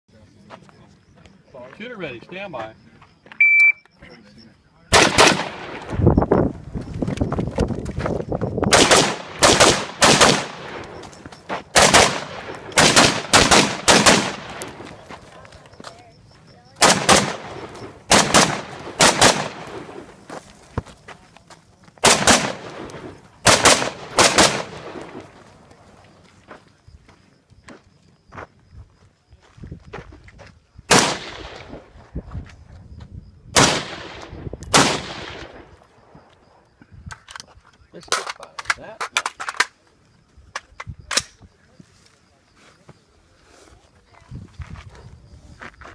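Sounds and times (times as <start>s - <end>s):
rifle shots cracking: 4.9s - 6.0s, 8.7s - 11.0s, 11.7s - 14.9s, 16.8s - 20.1s, 22.0s - 25.3s, 30.9s - 31.8s, 33.6s - 35.7s.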